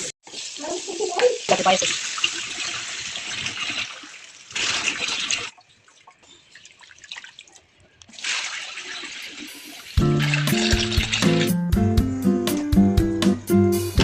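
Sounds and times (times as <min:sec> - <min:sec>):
tap water splashing into sink: 0:08.1 - 0:11.6.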